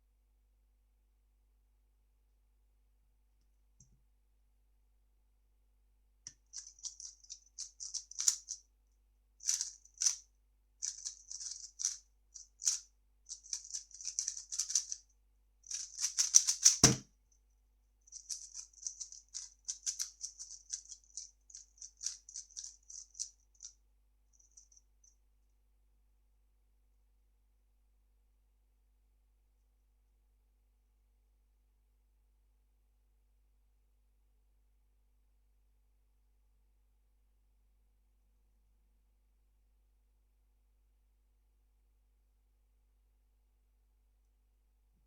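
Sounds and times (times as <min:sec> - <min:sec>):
plastic puzzle cube clicking: 0:07.8 - 0:08.6, 0:12.6 - 0:15.0, 0:15.7 - 0:17.0, 0:18.3 - 0:23.3
sharp knock: 0:16.8 - 0:17.0.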